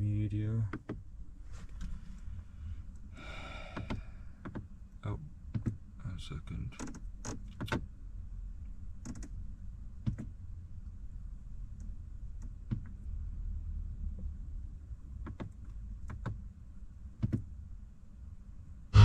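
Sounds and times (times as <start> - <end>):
low cabin hum: 0.0 - 13.4, 18.5 - 19.0.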